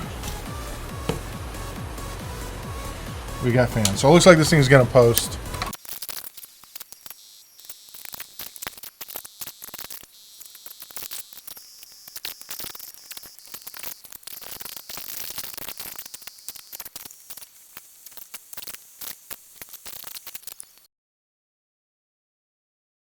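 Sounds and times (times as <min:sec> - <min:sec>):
high-pitched electronic whine: 0:05.7 - 0:20.9.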